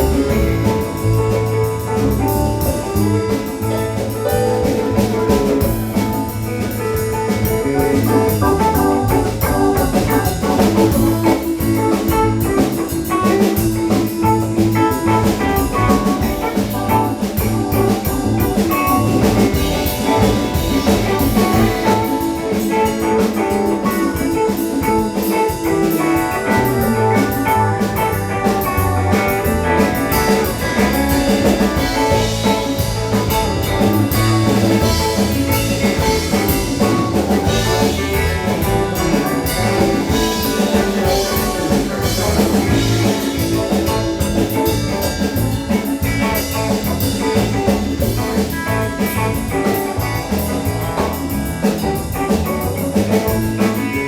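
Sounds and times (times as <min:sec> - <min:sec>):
drum kit beat: 0:00.0 - 0:54.0
electric guitar: 0:00.0 - 0:54.0.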